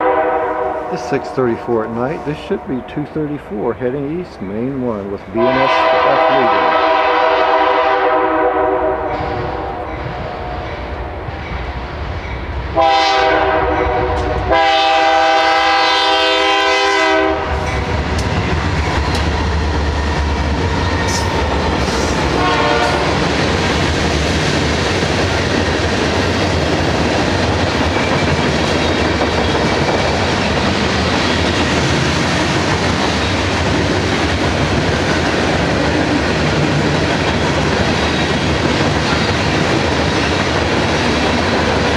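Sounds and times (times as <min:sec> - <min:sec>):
train air horn blasts: 0:00.0 - 0:03.1, 0:05.4 - 0:11.2, 0:12.8 - 0:17.7, 0:21.1 - 0:23.4
train rumbling past: 0:00.0 - 0:41.9
wheels clicking over rail joints: 0:17.6 - 0:41.9.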